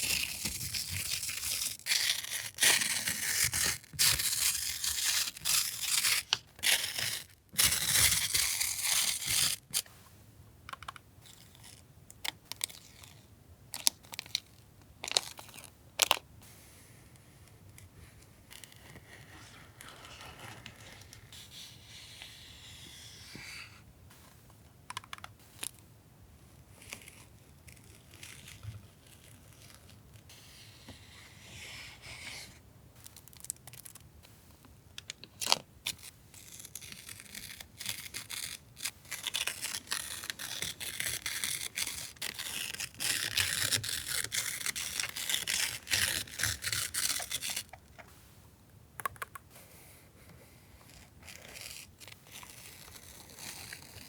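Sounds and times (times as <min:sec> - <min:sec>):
paper rustling and crinkling: 0:18.0 - 0:21.6.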